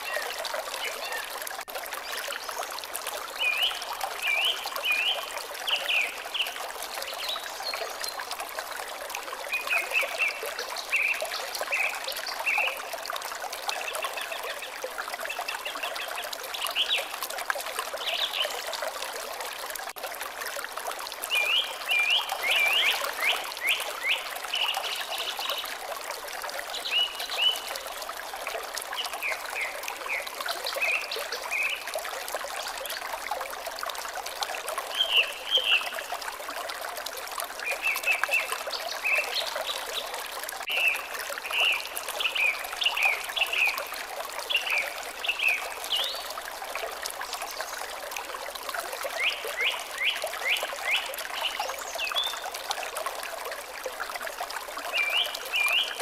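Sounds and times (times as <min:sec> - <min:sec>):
water trickling: 0:00.0 - 0:56.0.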